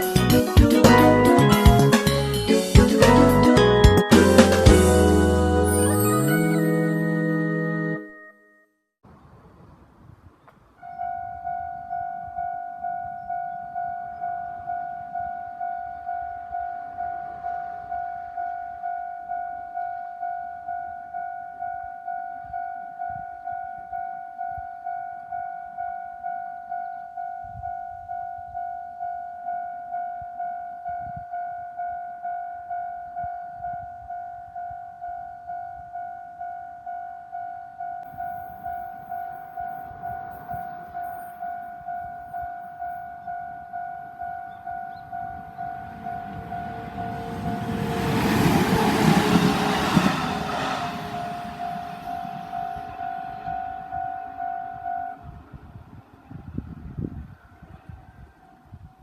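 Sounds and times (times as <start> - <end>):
level crossing alarm ringing: 37.7 - 55.2.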